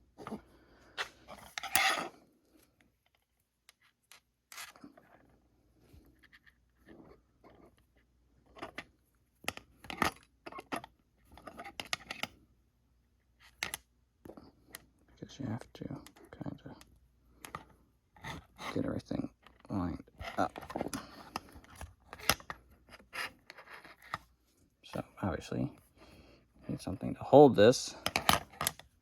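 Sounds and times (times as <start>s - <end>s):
metal tools clinking and scraping: 1.4s - 2.1s.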